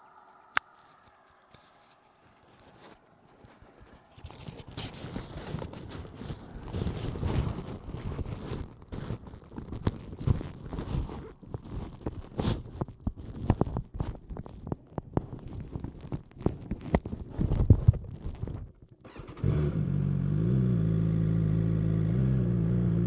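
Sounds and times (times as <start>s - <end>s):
muffled rustling: 0.8s - 19.2s.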